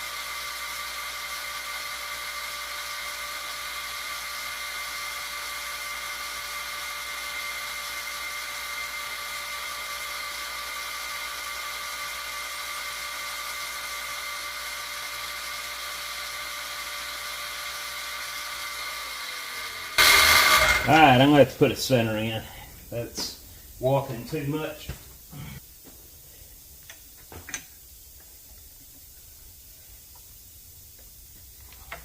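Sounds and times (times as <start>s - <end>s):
power drill drilling into metal: 0.0s - 21.0s.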